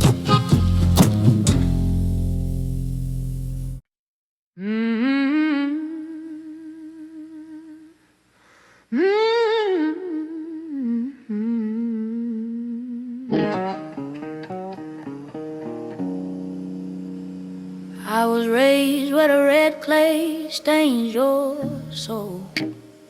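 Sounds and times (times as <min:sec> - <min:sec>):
blues band chord: 0:00.0 - 0:03.8, 0:13.4 - 0:18.2
plucked electric guitar notes: 0:00.0 - 0:03.8, 0:13.3 - 0:18.2, 0:21.6 - 0:23.0
woman humming: 0:04.6 - 0:08.0, 0:08.9 - 0:13.9, 0:17.9 - 0:23.0.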